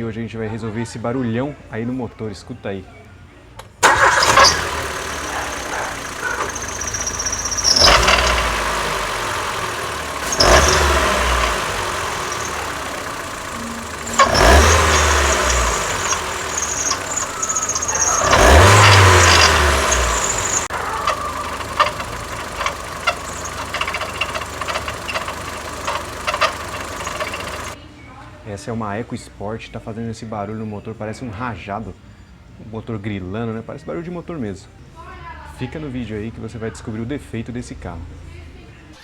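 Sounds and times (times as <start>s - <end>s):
car engine revving: 3.8s - 27.8s
rattling chirping engine noise: 3.8s - 27.8s.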